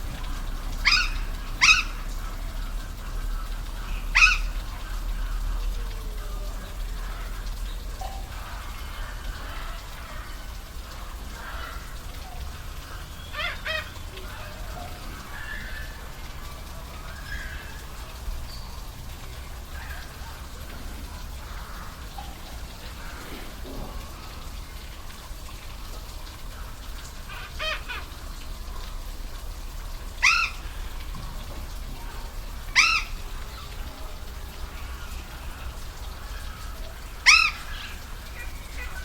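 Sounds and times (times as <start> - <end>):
waterfall rushing: 0.0 - 7.6
animal calling: 0.8 - 2.1, 3.8 - 4.6, 30.2 - 31.0, 32.2 - 34.1, 36.3 - 39.0.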